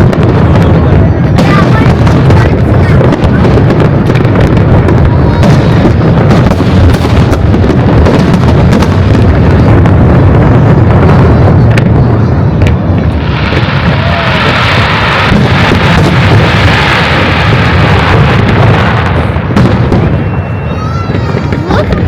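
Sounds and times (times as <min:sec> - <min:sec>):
fireworks booming: 0:00.0 - 0:22.0.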